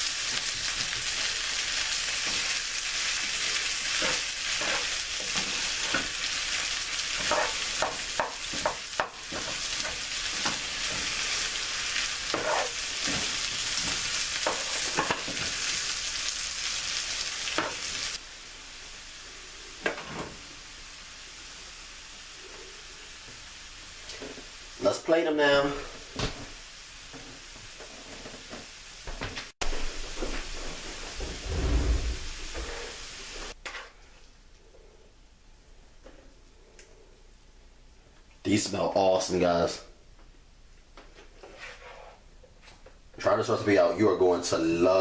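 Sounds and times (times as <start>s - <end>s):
potatoes sizzling in oil: 0.0s - 31.6s, 32.2s - 33.6s
spatula scraping and knocking: 12.3s - 15.4s.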